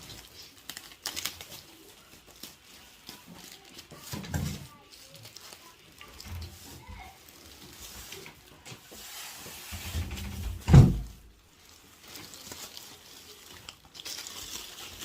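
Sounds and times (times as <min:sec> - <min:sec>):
handling and rustling: 0:00.0 - 0:15.0
loud dull thump: 0:10.6 - 0:11.2.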